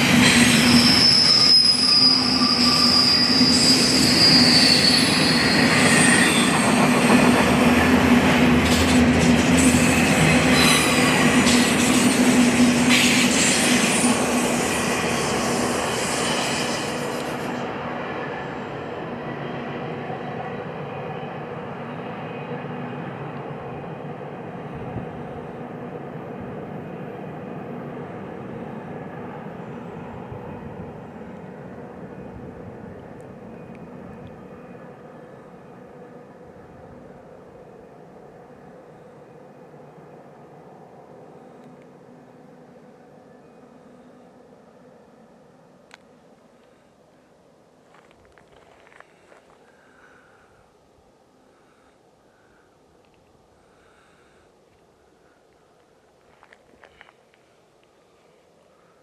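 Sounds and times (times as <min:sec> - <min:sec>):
wheels squealing against rail: 0:00.0 - 0:07.6, 0:08.6 - 0:20.4
freight train rumbling past: 0:00.0 - 0:47.5.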